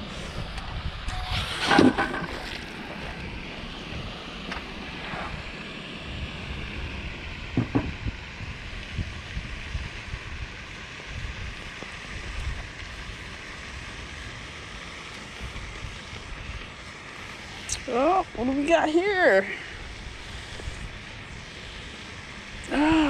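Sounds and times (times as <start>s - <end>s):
wind buffeting microphone: 0.0s - 14.0s
sharp knocks: 7.6s - 7.9s.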